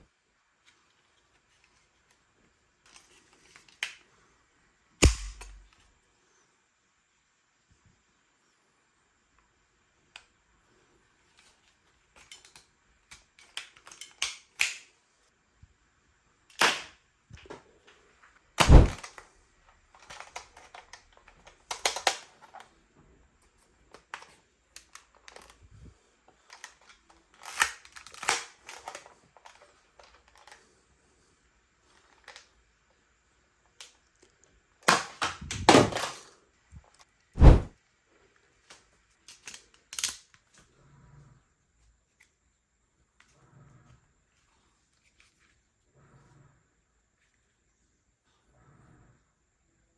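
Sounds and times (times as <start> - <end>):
toy gun plastic clicks and rattles: 2.8 - 4.1, 5.0 - 5.8, 11.3 - 15.0, 16.5 - 17.0, 18.6 - 19.3, 19.9 - 22.7, 23.9 - 25.6, 26.4 - 30.6, 31.9 - 32.6, 33.7 - 34.0, 38.6 - 40.6
toy gun sharp snaps: 5.0 - 5.8, 16.5 - 17.0, 18.6 - 19.1.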